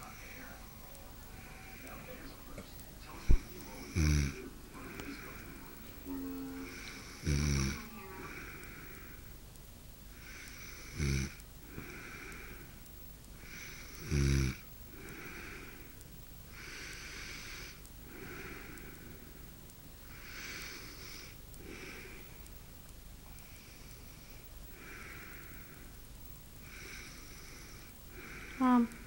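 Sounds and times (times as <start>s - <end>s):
wheezy whistling breaths: 0.0s - 2.4s
woman snoring: 3.9s - 4.4s, 6.2s - 8.7s, 10.2s - 11.4s, 13.4s - 14.6s, 26.7s - 29.0s.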